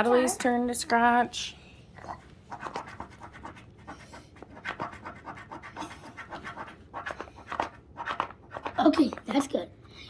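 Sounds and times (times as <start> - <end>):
scratching coating off paper: 2.0 - 9.6.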